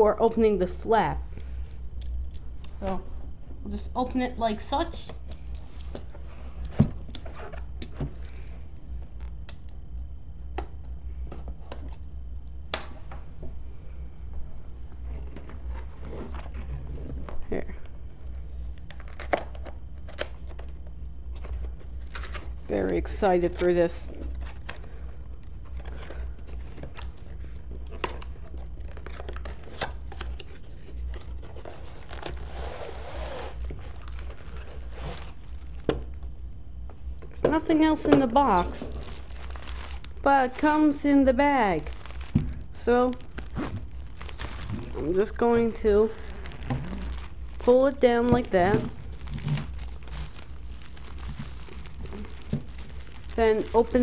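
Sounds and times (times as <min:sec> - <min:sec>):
packaging rustling and crinkling: 0:18.2 - 0:36.3, 0:37.1 - 0:54.0.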